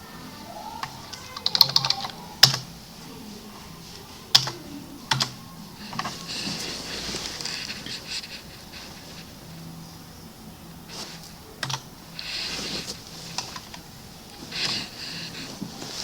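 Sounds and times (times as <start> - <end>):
computer keyboard typing: 0.8 - 2.8, 4.2 - 9.0, 11.2 - 13.9.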